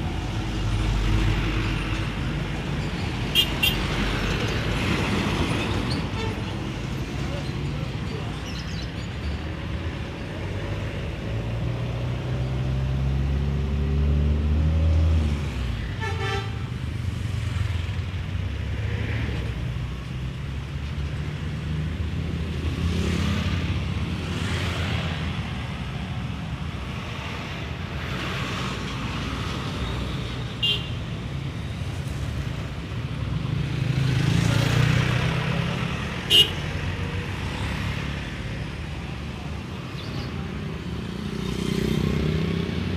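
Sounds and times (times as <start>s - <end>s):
bus engine rumbling: 0.0s - 13.4s
traffic passing: 0.0s - 42.9s.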